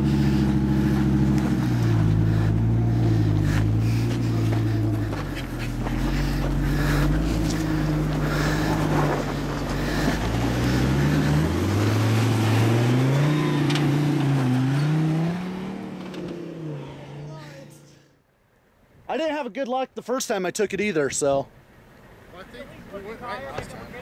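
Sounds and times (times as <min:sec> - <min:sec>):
truck engine revving: 0:00.0 - 0:17.8.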